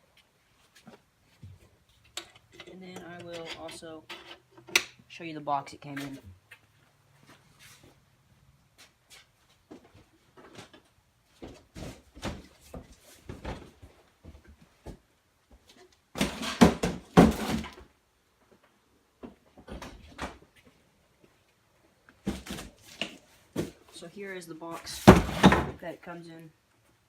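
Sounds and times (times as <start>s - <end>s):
cardboard box knocks and bumps: 16.2s - 17.8s, 25.0s - 25.8s.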